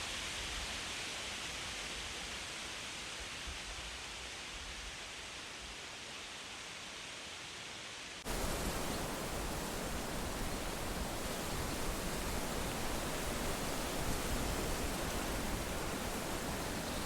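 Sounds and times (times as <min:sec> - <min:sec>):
leaves rustling: 0:08.2 - 0:17.0.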